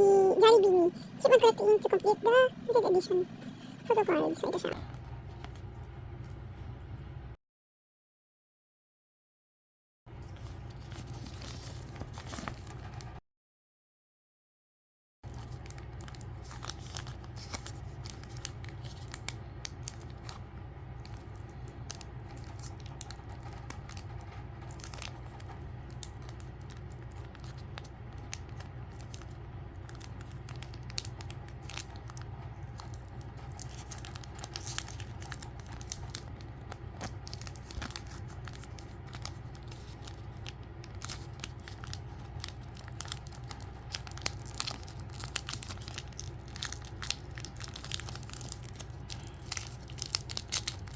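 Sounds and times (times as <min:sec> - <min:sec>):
steady low hum: 0:00.0 - 0:07.4, 0:15.3 - 0:50.9
packaging crinkling and tearing: 0:10.2 - 0:13.2, 0:15.2 - 0:50.9.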